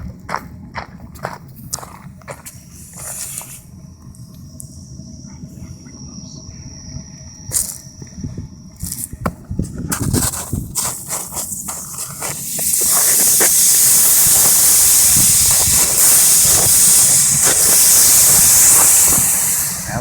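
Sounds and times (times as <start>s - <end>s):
snow hissing into steam: 2.6s - 3.7s, 9.9s - 20.0s.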